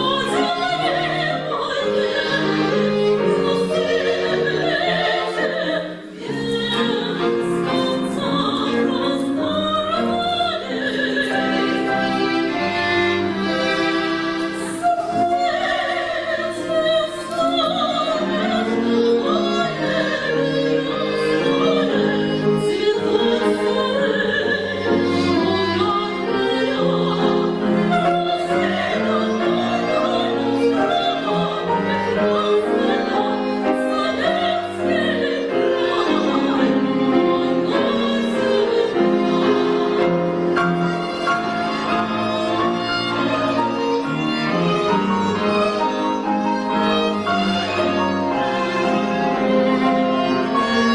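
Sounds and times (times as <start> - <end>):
woman singing operatically: 0.0 - 12.0, 14.6 - 39.6
string accompaniment: 0.0 - 50.9.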